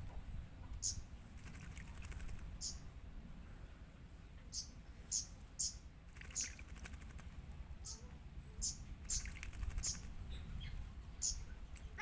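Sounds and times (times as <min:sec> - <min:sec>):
bird chirping: 0:00.7 - 0:02.9, 0:04.5 - 0:06.7, 0:07.8 - 0:12.0.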